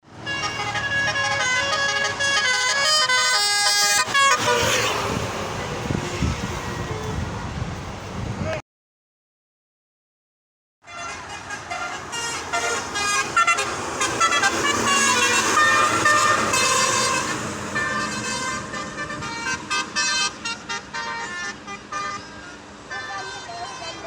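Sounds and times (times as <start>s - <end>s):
passing highway traffic: 0.0s - 8.6s, 10.8s - 24.0s
musical air horn melody: 0.2s - 5.1s, 10.8s - 24.0s.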